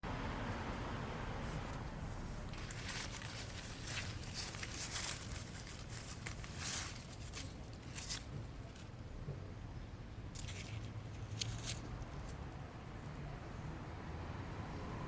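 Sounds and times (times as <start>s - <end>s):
soil and plant stems rustling: 0.5s - 9.1s, 10.3s - 12.7s.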